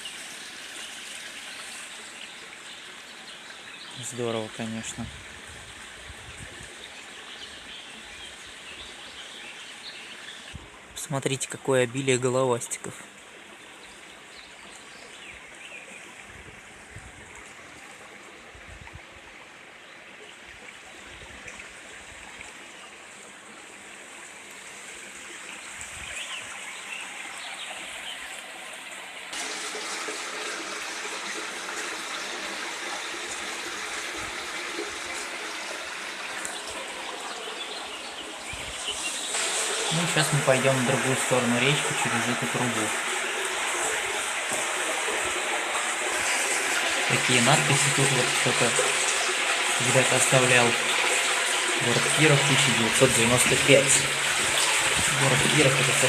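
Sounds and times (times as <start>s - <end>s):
river water trickling: 0.0s - 56.0s.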